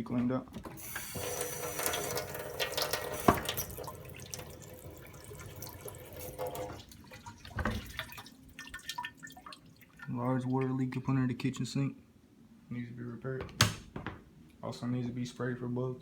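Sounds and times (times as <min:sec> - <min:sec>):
faucet shut-off click: 0:00.6 - 0:04.5
faucet running water: 0:00.6 - 0:10.7.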